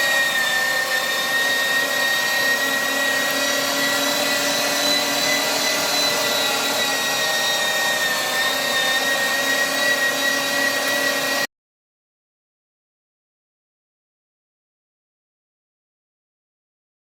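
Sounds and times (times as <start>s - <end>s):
meat grinder motor whining: 0.0s - 11.5s.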